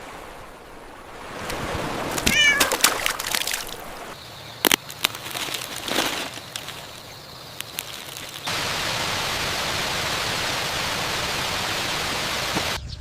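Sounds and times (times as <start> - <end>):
cat meowing: 2.3 - 2.8.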